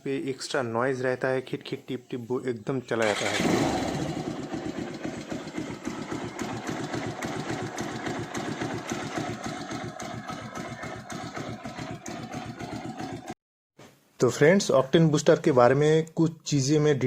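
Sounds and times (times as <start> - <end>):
motorcycle engine idling: 3.0 - 13.4
fine tapping from engine: 4.5 - 13.4.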